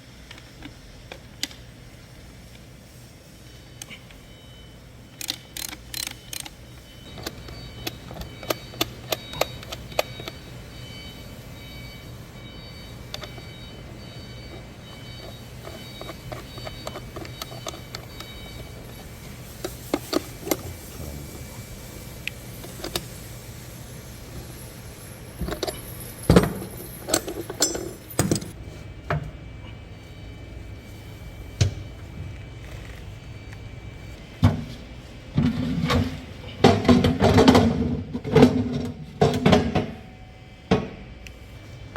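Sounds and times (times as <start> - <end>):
steady low hum: 0.0 - 41.9
sharp metallic clinks and knocks: 24.3 - 28.5.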